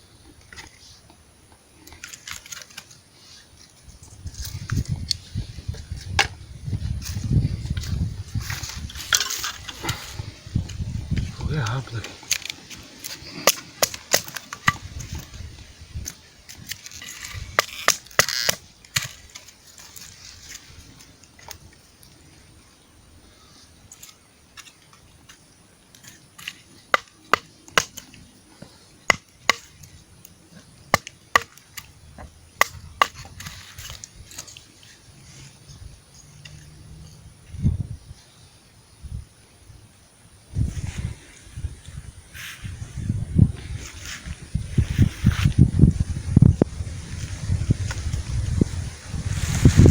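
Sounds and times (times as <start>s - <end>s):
wood being chopped: 13.1s - 15.3s, 26.4s - 34.5s.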